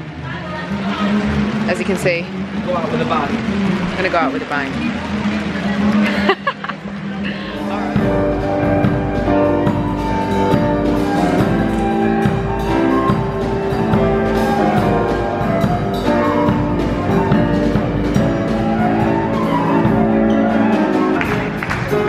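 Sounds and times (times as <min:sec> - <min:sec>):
live band playing: 0:07.3 - 0:22.0
steady drum beat: 0:07.3 - 0:22.0.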